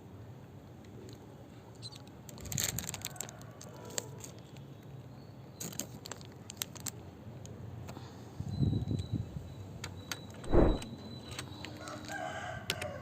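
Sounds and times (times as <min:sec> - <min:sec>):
plastic toy cars clicking: 0:05.6 - 0:07.0
steady low hum: 0:10.4 - 0:10.9.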